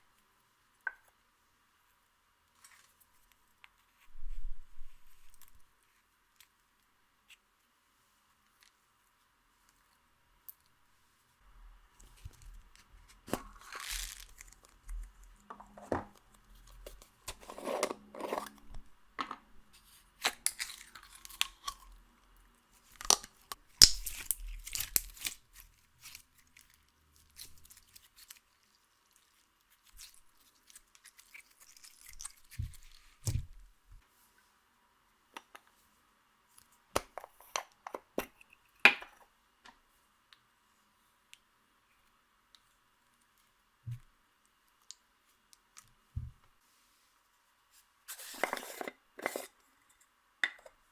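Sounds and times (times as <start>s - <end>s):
sticky slime crackling: 13.2s - 15.4s, 22.8s - 33.4s.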